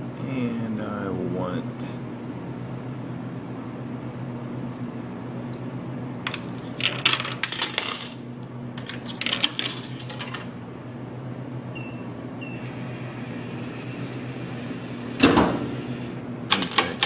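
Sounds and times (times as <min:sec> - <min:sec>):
vending machine hum: 0:00.0 - 0:17.0
coins clattering into change return: 0:06.8 - 0:08.2, 0:08.8 - 0:10.5, 0:16.5 - 0:17.0.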